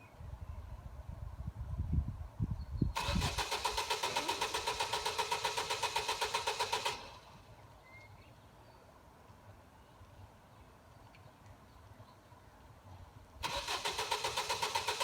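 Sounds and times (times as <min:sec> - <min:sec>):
starter motor cranking engine: 0:03.0 - 0:07.3, 0:13.4 - 0:15.0.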